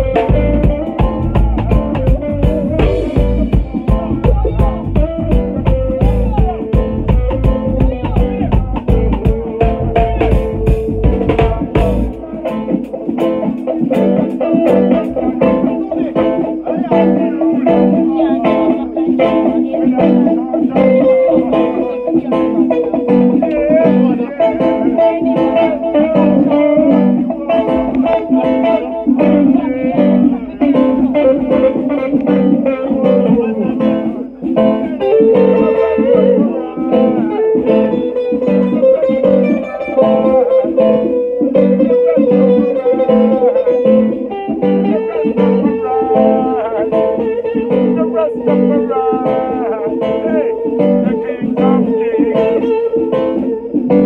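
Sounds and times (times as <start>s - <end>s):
band playing blues: 0.0s - 54.0s
lead guitar bending notes: 0.0s - 54.0s.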